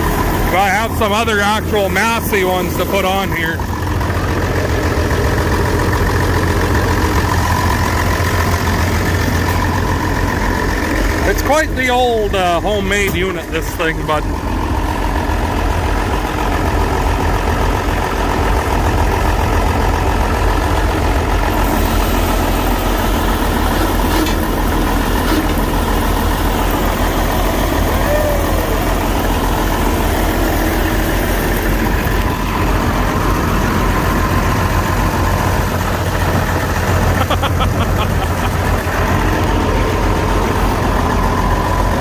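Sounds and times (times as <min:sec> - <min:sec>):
tractor engine idling: 0:00.0 - 0:42.0.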